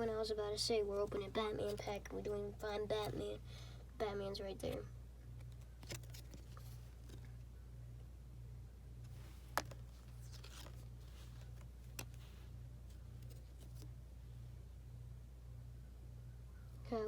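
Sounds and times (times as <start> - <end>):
steady low hum: 0.0 - 17.0
light rustling of cards: 0.6 - 3.3, 4.6 - 7.6, 9.0 - 14.5
cards clicking: 5.4 - 7.3, 9.2 - 13.9.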